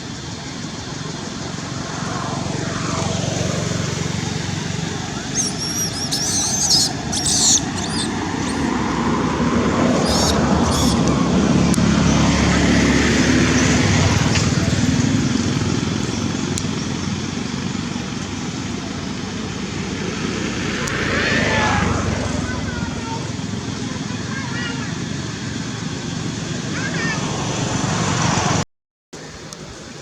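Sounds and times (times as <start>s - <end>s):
vehicle engine passing by: 0.0s - 28.6s
outdoor noise: 0.0s - 30.0s
sharp rustling: 5.2s - 8.8s.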